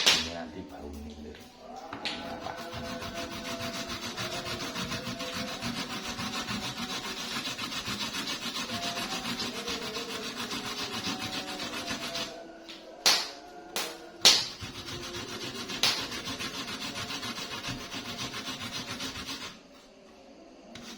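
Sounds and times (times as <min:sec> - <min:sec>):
root rasping on a grater: 0:02.2 - 0:12.4, 0:14.5 - 0:19.6.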